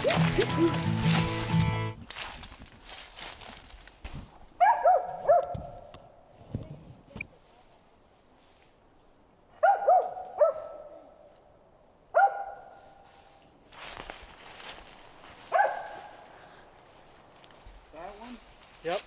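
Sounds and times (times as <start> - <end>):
rustling noise: 0.0 - 5.8, 6.4 - 9.4, 12.6 - 19.0
dog barking: 4.6 - 5.9, 9.6 - 11.1, 12.1 - 12.8, 15.5 - 16.2.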